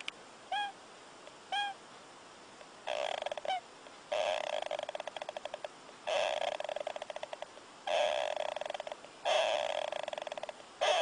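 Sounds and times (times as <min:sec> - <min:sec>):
animal snoring with rattling buzzes: 0:02.7 - 0:11.0
short squeaky chirps: 0:02.9 - 0:03.6.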